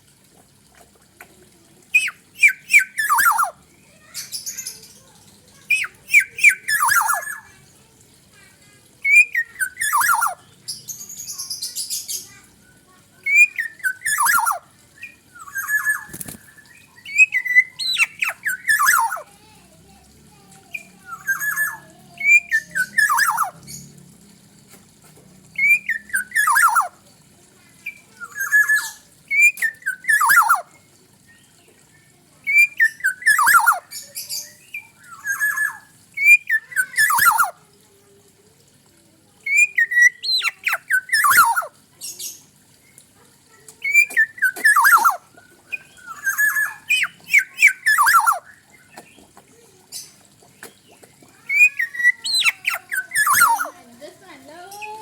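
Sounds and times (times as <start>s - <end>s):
bird whistle and harsh squawk: 1.9s - 7.6s, 9.0s - 19.5s, 20.7s - 23.8s, 25.6s - 27.0s, 27.8s - 30.7s, 32.4s - 37.6s, 39.5s - 42.4s, 43.5s - 49.1s, 51.3s - 53.8s.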